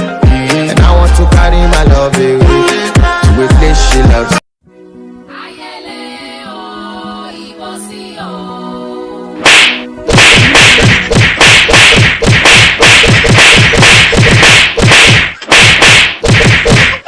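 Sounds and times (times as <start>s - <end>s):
sharp strikes with dull thumps: 9.5s - 17.0s.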